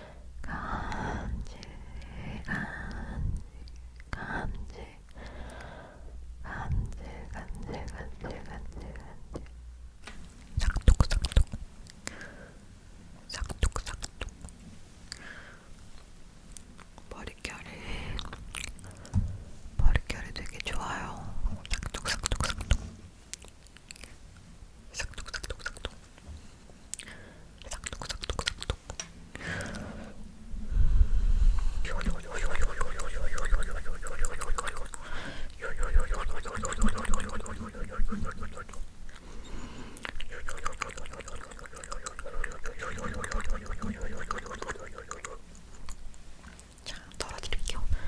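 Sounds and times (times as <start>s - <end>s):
wet lip and tongue clicks: 6.7s - 12.2s, 13.3s - 15.3s, 16.0s - 19.1s, 21.6s - 24.2s, 24.9s - 26.2s, 26.9s - 29.1s, 31.8s - 39.3s, 40.0s - 48.0s.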